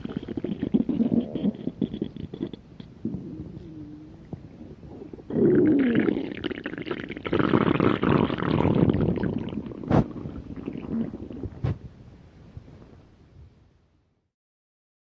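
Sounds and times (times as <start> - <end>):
stomach growling: 0.0 - 11.9.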